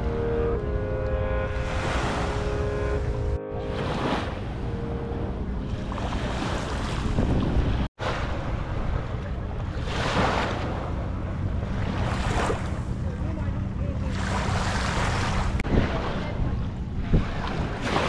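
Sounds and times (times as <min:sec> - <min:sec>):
wind buffeting microphone: 0:05.2 - 0:18.0.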